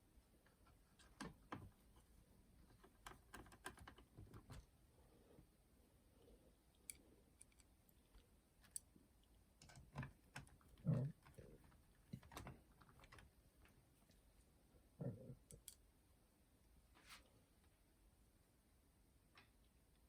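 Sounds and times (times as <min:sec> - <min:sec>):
small parts and tools clicking: 0:06.7 - 0:08.9, 0:09.6 - 0:13.3, 0:15.4 - 0:15.8.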